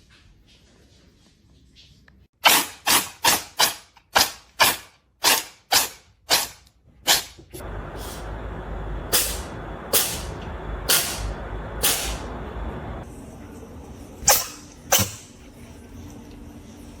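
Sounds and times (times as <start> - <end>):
cat sneezing: 14.2 - 15.2.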